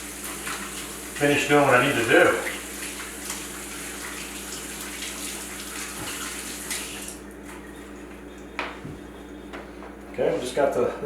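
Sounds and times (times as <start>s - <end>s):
tap water splashing: 0.1s - 7.6s.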